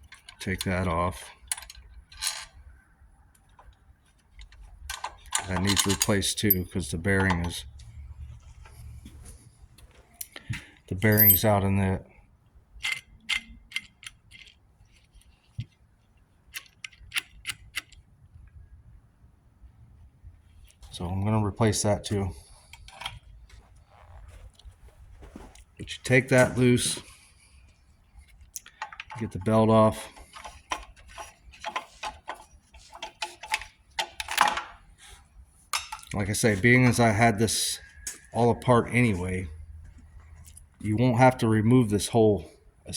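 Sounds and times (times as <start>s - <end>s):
metallic clicks from hand tools: 12.8s - 14.6s.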